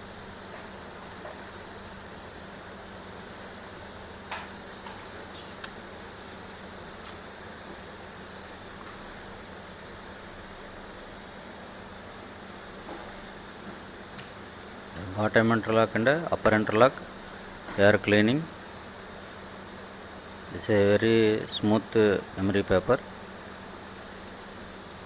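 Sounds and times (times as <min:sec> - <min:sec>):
high-pitched hiss: 0:14.6 - 0:25.0.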